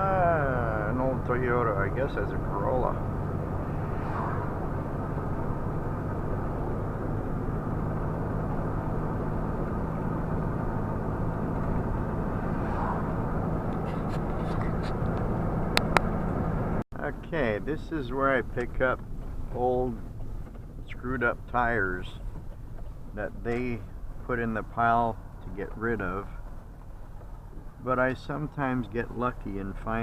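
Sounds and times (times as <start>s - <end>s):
vehicle engine and road noise: 0.0s - 30.0s.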